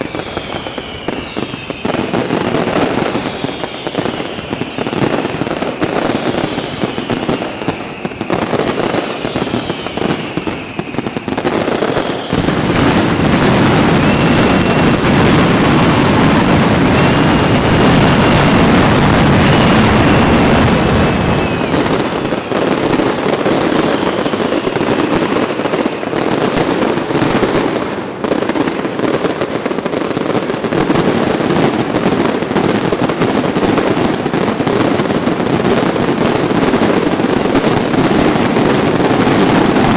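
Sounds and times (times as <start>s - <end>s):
whistling firework shells: 0.0s - 29.5s
fireworks bangs and crackling: 0.0s - 39.9s.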